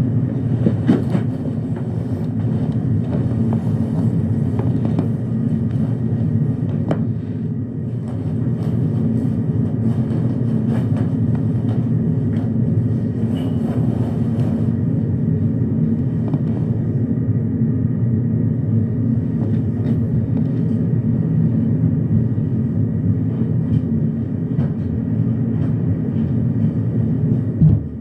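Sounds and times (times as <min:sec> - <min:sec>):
low rumbling hum: 0:00.0 - 0:28.0.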